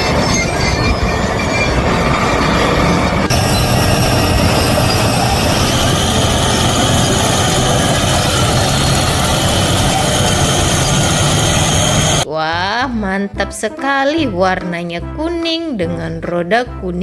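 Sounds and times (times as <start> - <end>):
bulldozer engine running: 0.0 - 12.2.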